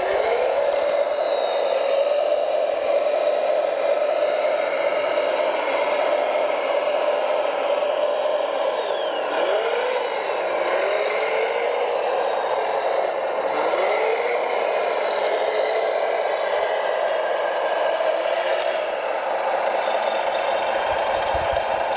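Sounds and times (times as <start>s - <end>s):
whine shifting in pitch: 0.0s - 16.6s
model loader motors whining: 0.0s - 21.9s.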